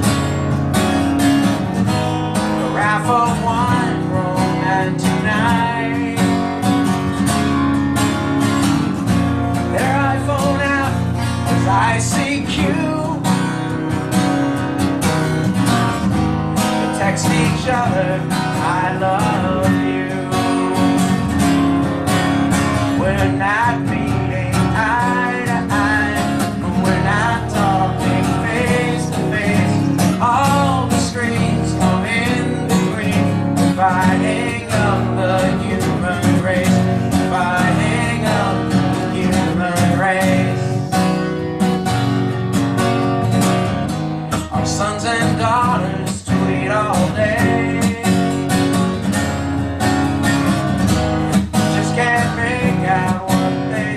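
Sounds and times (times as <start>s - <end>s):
acoustic guitar strumming: 0.0s - 53.9s
person singing: 2.4s - 6.6s, 9.7s - 13.3s, 17.0s - 21.3s, 22.6s - 41.0s, 44.4s - 48.5s, 51.6s - 53.9s.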